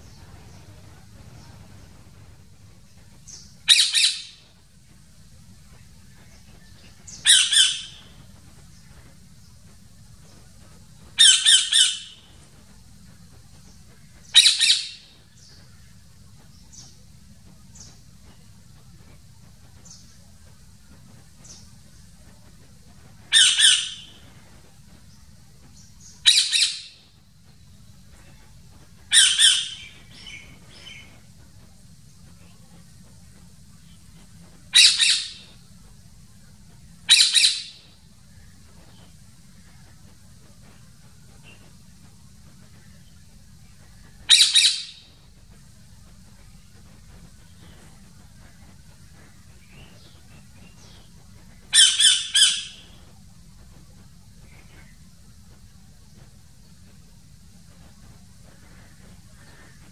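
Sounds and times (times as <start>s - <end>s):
parrot squawking: 3.7s - 4.4s, 7.2s - 8.0s, 11.2s - 12.2s, 14.4s - 15.0s, 23.3s - 24.1s, 26.2s - 26.9s, 29.1s - 30.4s, 34.7s - 35.4s, 37.1s - 37.8s, 44.3s - 45.0s, 51.7s - 52.8s.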